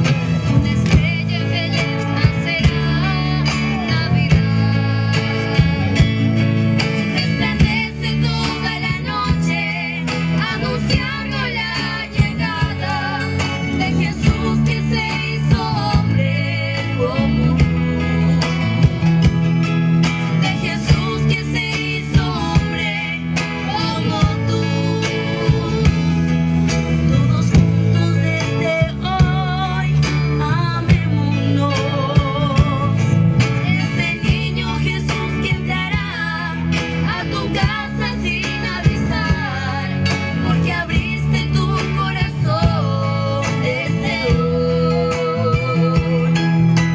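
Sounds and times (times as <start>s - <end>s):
guitar accompaniment: 0.0s - 46.9s
live band music: 0.0s - 46.9s
person singing with vibrato: 0.0s - 46.9s
person singing: 26.9s - 46.6s.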